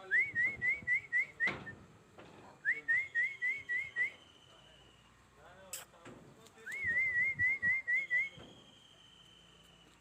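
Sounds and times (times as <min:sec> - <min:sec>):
high-pitched whistled notes: 0:06.7 - 0:10.0.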